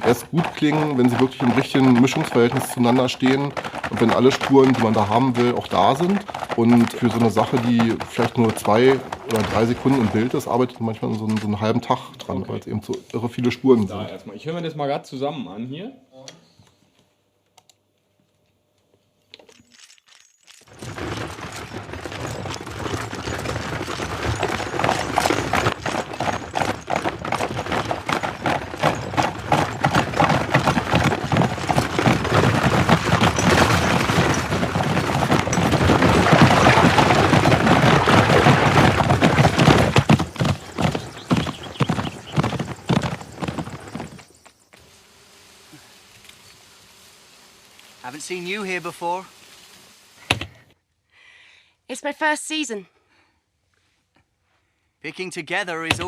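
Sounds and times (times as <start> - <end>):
rattle of rolling wheels: 0.0 - 11.7, 19.8 - 44.7
horse hooves clip-clopping: 0.0 - 14.1, 19.3 - 50.6.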